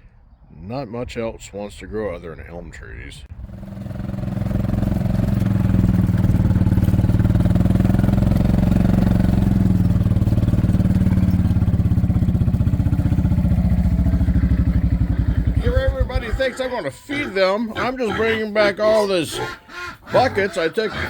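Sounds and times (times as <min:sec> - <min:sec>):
engine running with low pulsing: 0:03.3 - 0:16.6.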